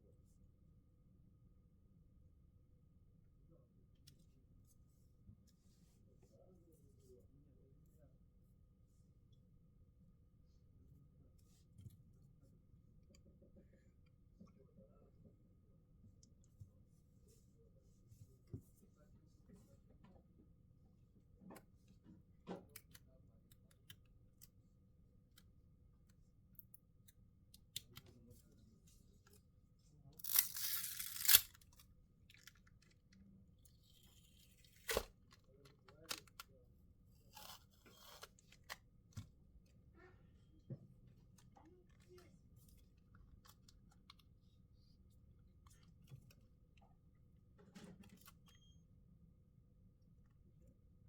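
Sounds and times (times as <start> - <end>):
small parts and tools clicking: 30.2 - 33.0.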